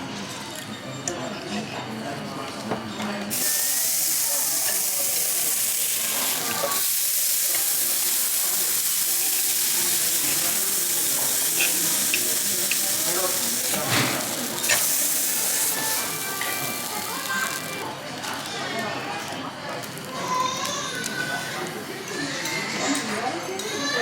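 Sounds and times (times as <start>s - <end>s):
food sizzling in frying pan: 3.3s - 18.8s.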